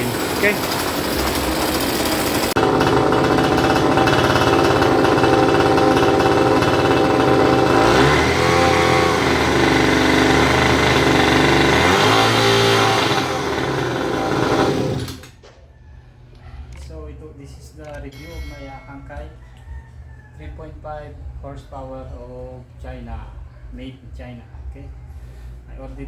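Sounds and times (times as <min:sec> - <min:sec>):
outboard motor running: 0:00.0 - 0:15.3.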